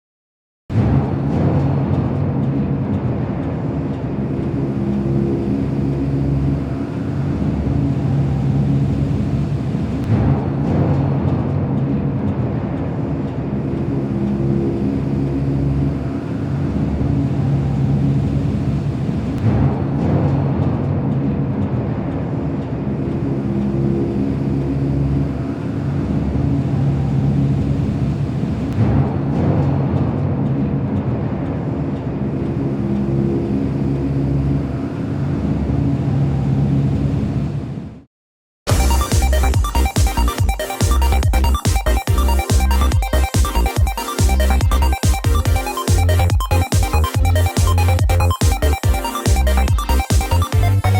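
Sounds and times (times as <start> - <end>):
rumbling drone: 0.7 - 37.8, 38.7 - 50.9
low mechanical hum: 0.8 - 38.1
held low tones: 38.7 - 50.9.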